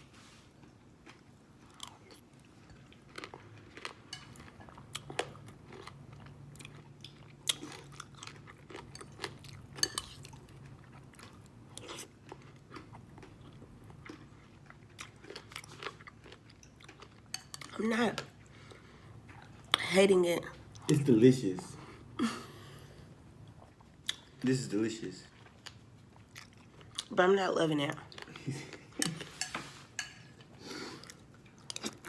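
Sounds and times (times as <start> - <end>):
chewing crunchy seeds: 1.0 - 17.8.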